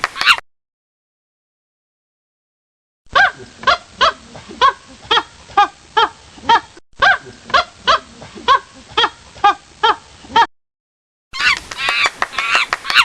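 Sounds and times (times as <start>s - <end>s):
monkey calling: 11.4s - 13.0s.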